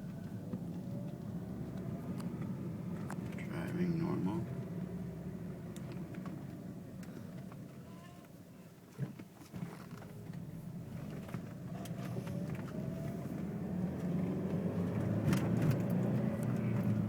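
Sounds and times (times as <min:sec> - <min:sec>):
car engine pulling away: 0:00.0 - 0:07.8, 0:09.6 - 0:17.0.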